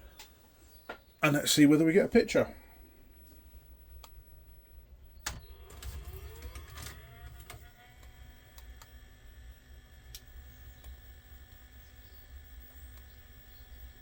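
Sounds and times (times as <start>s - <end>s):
tape mechanism running: 5.2s - 14.0s.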